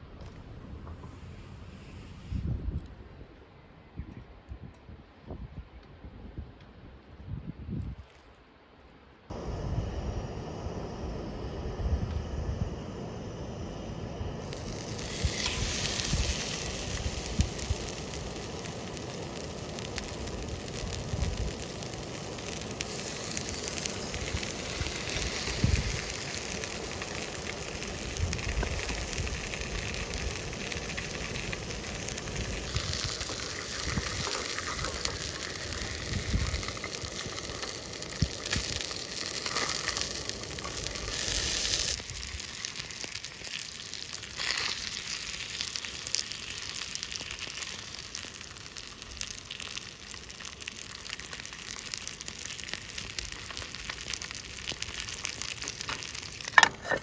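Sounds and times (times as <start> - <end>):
food sizzling in a pan: 9.3 - 57.0.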